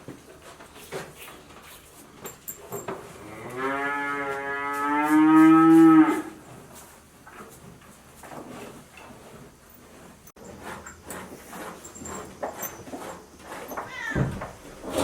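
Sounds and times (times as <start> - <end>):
cow mooing: 3.2 - 6.4.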